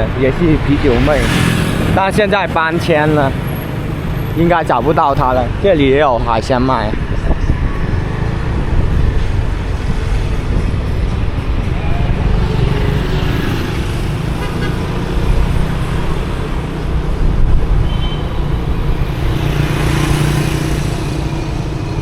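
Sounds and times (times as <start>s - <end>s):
wind buffeting microphone: 0.0s - 22.0s
vehicle horn toot: 14.4s - 14.9s, 17.8s - 18.4s.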